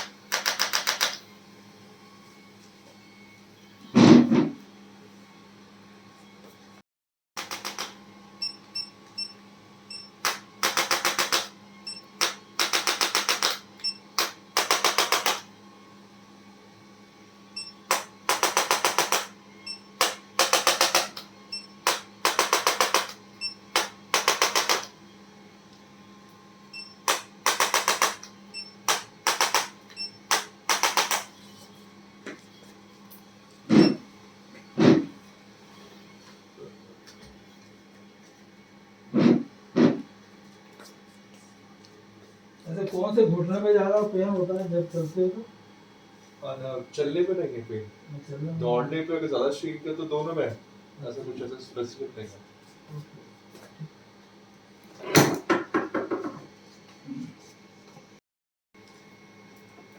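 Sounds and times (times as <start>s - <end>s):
electric percussion tool pulsing: 10.0s - 15.5s, 17.6s - 25.0s, 27.0s - 31.3s.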